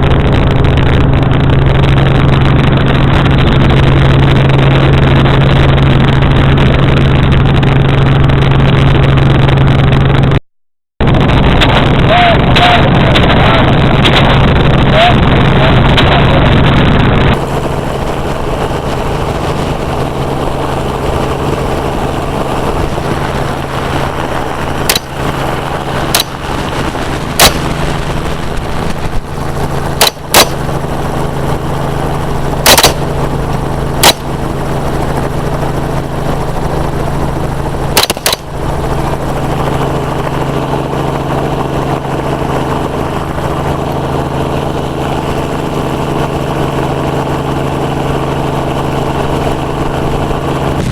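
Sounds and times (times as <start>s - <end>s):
helicopter engine and rotor: 0.0s - 10.4s, 11.0s - 50.9s
gunshots: 26.1s - 26.5s, 27.3s - 27.9s, 30.0s - 30.7s, 32.6s - 33.1s, 34.0s - 34.4s, 38.0s - 38.5s.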